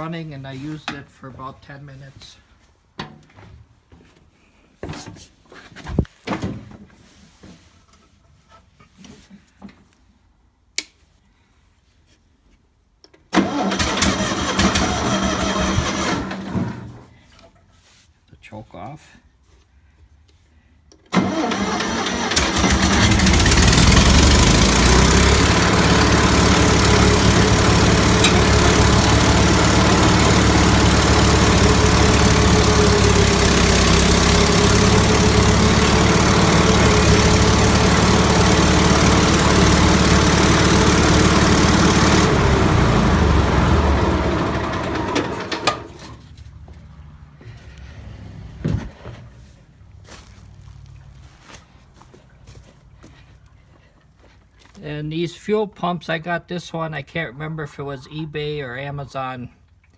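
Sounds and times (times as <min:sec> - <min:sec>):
engine cranking and running: 0:13.4 - 0:17.0, 0:21.1 - 0:46.2.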